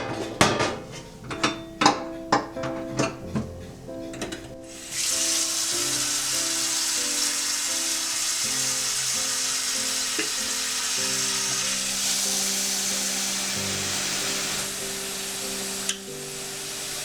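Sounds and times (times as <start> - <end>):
soft background music: 0.0 - 17.0
tap water running: 4.2 - 17.0.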